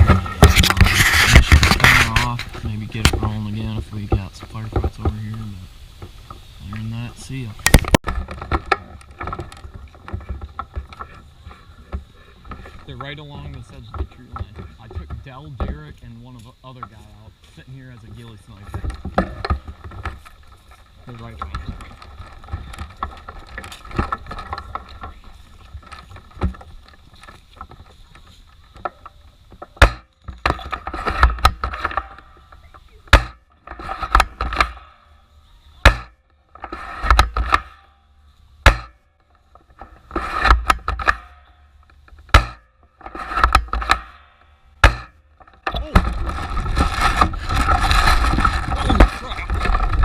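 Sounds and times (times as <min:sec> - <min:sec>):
gun handling clatter: 0:18.6 - 0:32.4.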